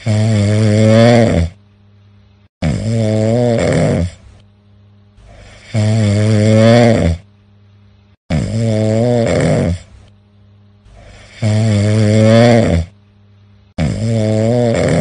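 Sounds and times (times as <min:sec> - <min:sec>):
person snoring: 0:00.0 - 0:01.6, 0:02.6 - 0:04.4, 0:05.2 - 0:07.3, 0:08.3 - 0:10.1, 0:10.9 - 0:13.0, 0:13.8 - 0:15.0
quiet breathing: 0:04.0 - 0:08.2, 0:09.6 - 0:13.8.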